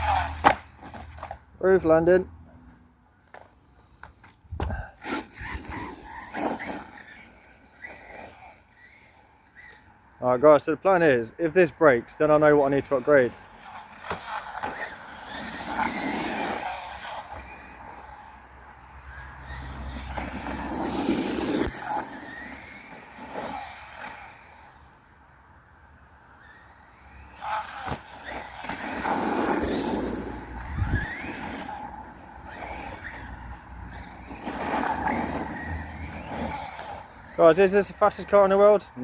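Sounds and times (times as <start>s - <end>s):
electric motor whining in surges: 0.0s - 0.5s, 4.6s - 10.0s, 12.7s - 24.9s, 26.3s - 38.8s.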